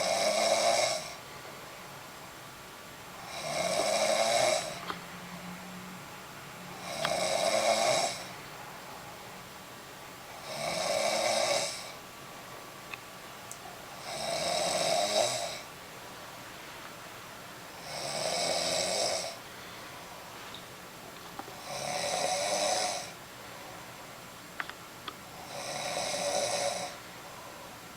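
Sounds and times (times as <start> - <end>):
woman snoring loudly: 0.0 - 1.2, 3.2 - 4.8, 6.8 - 8.3, 10.3 - 12.0, 14.0 - 15.7, 17.8 - 19.4, 21.6 - 23.2, 25.4 - 27.0
quiet breathing: 18.9 - 20.6.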